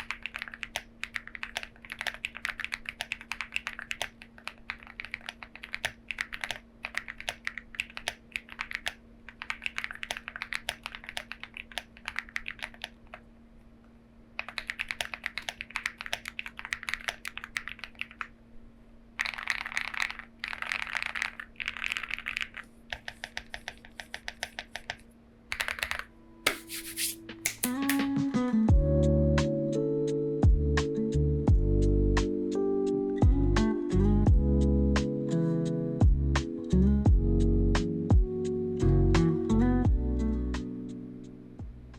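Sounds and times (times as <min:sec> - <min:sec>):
mechanical keyboard typing: 0:00.0 - 0:13.0, 0:14.4 - 0:18.3, 0:19.2 - 0:28.1
music: 0:27.2 - 0:41.9.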